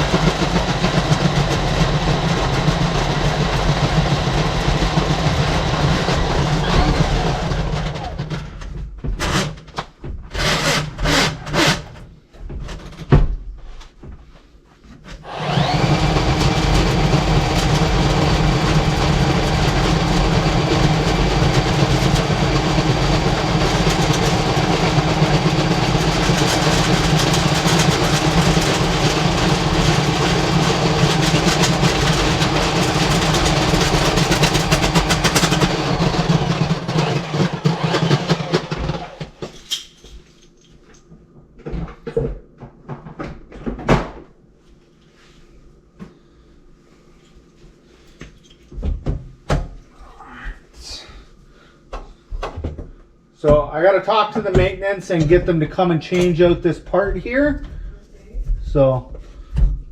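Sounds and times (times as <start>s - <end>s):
knocks and clanks: 7.9s - 14.3s
drain snake motor humming: 15.3s - 39.1s.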